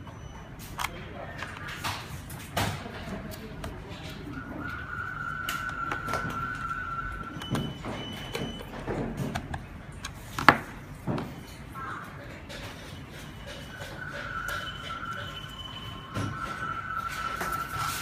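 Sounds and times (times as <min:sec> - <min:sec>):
steady high tone: 0:13.4 - 0:18.0.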